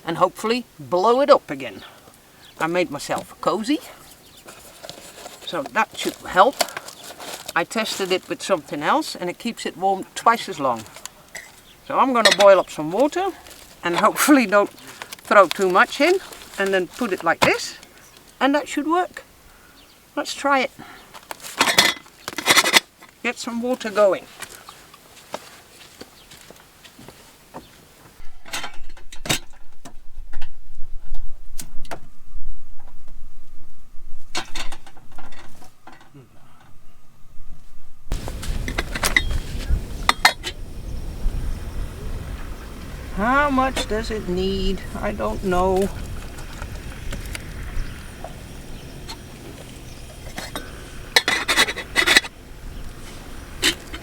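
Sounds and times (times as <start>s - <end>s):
stove low rumble: 28.2s - 54.0s.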